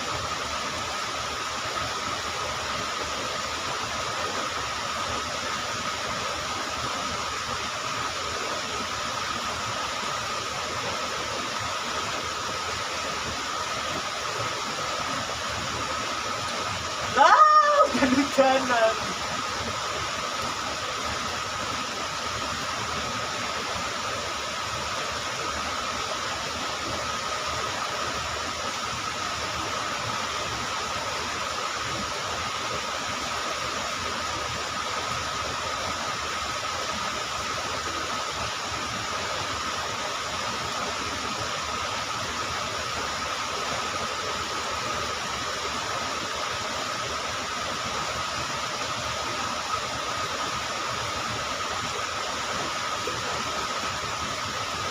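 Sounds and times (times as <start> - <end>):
river water rushing: 0.0 - 54.9.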